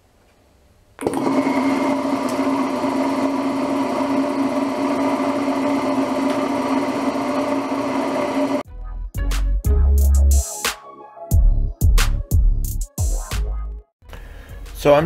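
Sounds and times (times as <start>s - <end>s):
air compressor motor running: 1.0s - 8.6s.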